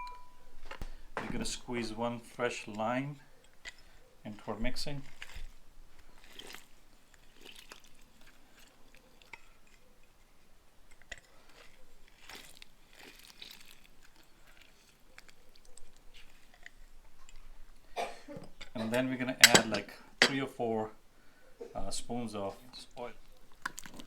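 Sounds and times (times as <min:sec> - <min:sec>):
lime crunching and squishing: 0:03.5 - 0:17.8, 0:23.0 - 0:24.0.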